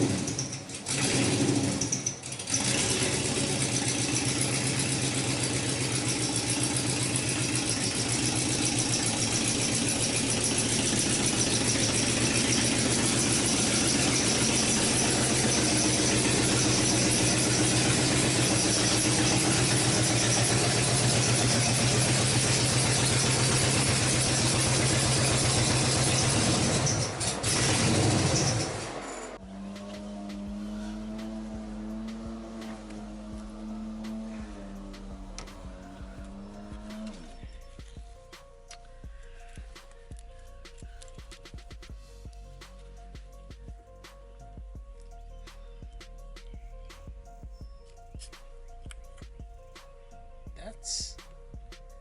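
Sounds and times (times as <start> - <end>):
car engine idling: 0.0 - 38.4.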